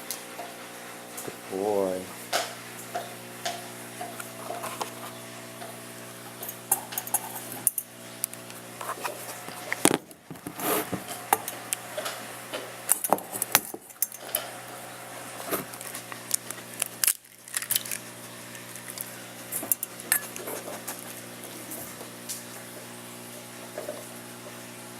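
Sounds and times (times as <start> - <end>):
dishes and utensils clinking: 19.6 - 21.0.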